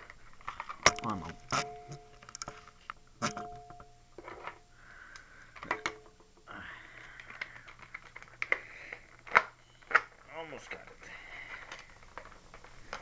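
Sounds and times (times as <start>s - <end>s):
plastic crinkling rustle: 0.0s - 1.5s, 7.0s - 13.0s
plastic packaging clicks and knocks: 0.0s - 4.6s, 5.5s - 13.0s.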